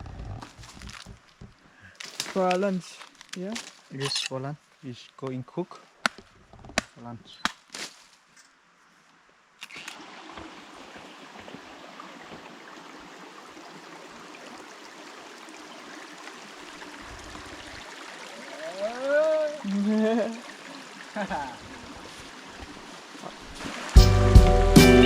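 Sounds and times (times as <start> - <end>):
stream flowing: 8.5 - 24.7
person's voice: 18.4 - 20.4.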